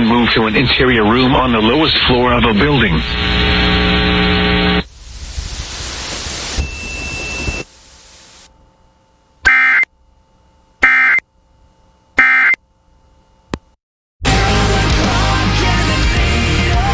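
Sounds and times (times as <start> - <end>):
radio hiss: 0.0 - 9.9
digital tone bursts: 9.4 - 9.9, 10.8 - 11.3, 12.2 - 12.6.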